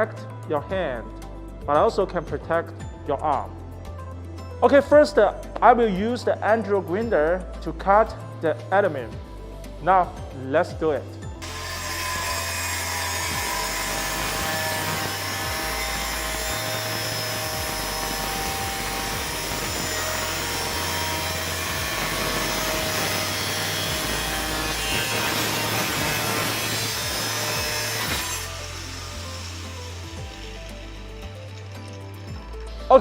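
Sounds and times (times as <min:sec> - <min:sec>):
background music with bass: 0:00.0 - 0:33.0
angle grinder cutting metal: 0:11.4 - 0:32.9.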